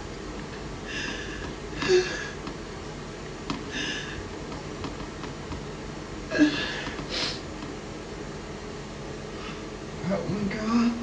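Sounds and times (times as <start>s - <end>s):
person whimpering in pain: 0.9s - 2.4s, 6.3s - 7.4s.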